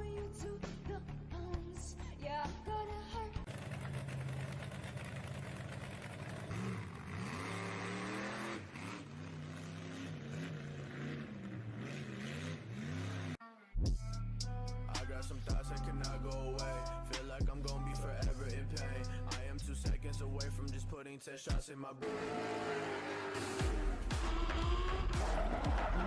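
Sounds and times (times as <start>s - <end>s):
car engine revving: 3.5s - 13.4s, 22.0s - 26.0s.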